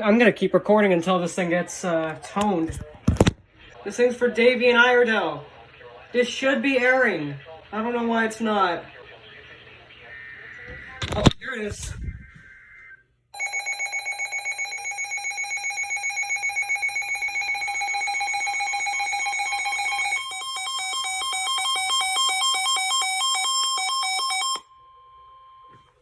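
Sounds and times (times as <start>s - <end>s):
faint steady warning tone: 12.7s - 26.0s.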